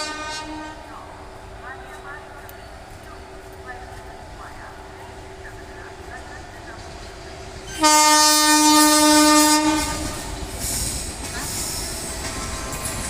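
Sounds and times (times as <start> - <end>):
locomotive horn blast: 0.0 - 0.9, 7.8 - 10.3
train running on track: 0.0 - 13.0.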